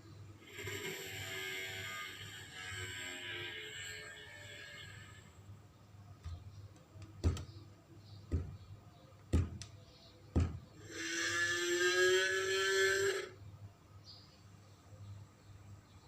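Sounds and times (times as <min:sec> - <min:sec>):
heavy thuds: 0:07.2 - 0:07.5, 0:08.3 - 0:08.7, 0:09.3 - 0:09.7, 0:10.3 - 0:10.8
long rising creature call: 0:10.8 - 0:13.4.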